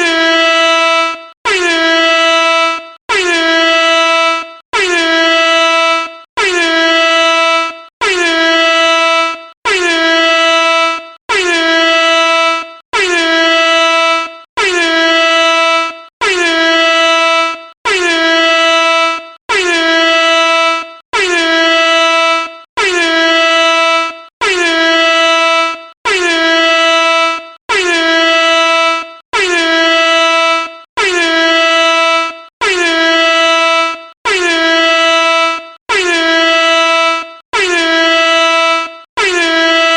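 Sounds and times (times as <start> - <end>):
air horn blasts: 0.0 - 39.9.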